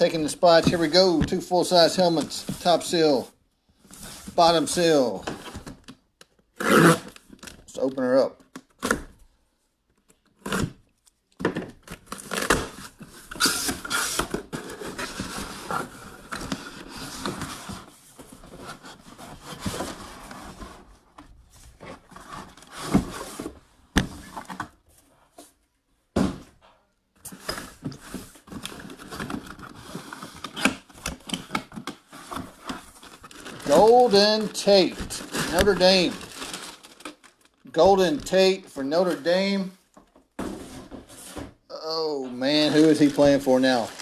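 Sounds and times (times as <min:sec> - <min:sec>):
cardboard tearing: 0:06.6 - 0:07.3, 0:28.4 - 0:37.5, 0:42.6 - 0:44.0
plastic packaging crinkling: 0:32.8 - 0:37.7, 0:42.7 - 0:44.0.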